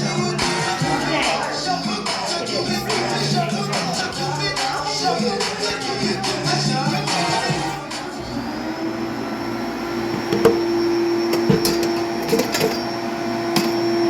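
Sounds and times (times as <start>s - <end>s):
vacuum cleaner whine: 4.0s - 14.0s
vacuum cleaner knocking: 10.0s - 12.8s.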